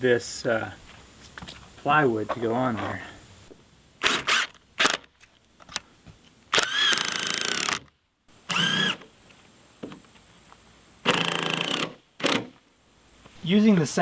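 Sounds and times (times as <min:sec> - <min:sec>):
impact driver motor whine: 0:04.0 - 0:05.1, 0:06.6 - 0:07.9, 0:08.5 - 0:09.0.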